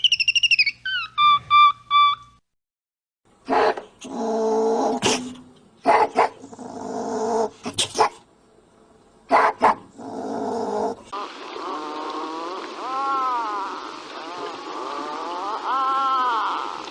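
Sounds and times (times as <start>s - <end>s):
dog barking and yelping: 5.0s - 6.4s, 9.3s - 9.9s.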